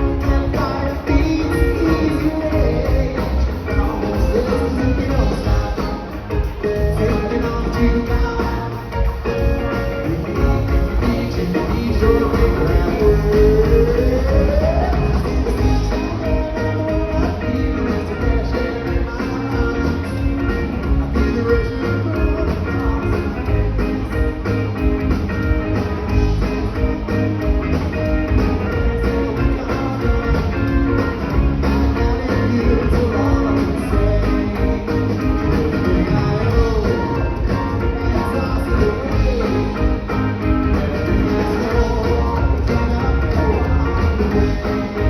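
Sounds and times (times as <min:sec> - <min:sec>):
bass guitar: 0:00.0 - 0:45.0
electric guitar: 0:00.0 - 0:45.0
steady drum beat: 0:00.0 - 0:45.0.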